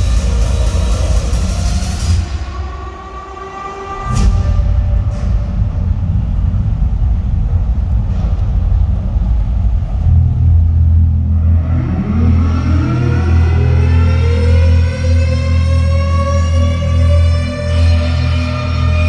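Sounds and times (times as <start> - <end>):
deep rumble over sound system: 0.0 - 19.0
rising pitch sweep: 9.9 - 19.0.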